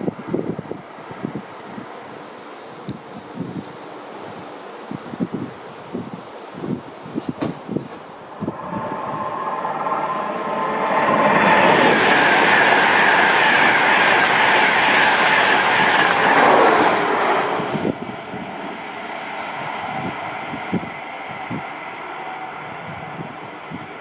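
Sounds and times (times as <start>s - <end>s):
light wind: 0.0s - 24.0s
train passing at speed: 7.4s - 24.0s.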